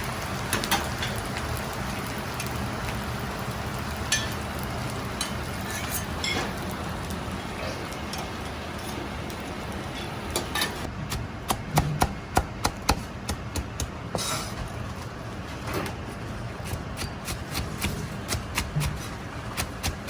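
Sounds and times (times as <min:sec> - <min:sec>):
kitchen hum: 0:00.0 - 0:20.0.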